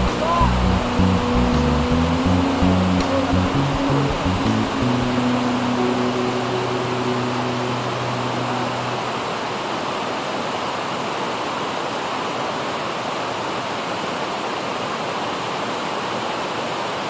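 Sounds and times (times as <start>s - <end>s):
background music: 0.0s - 9.6s.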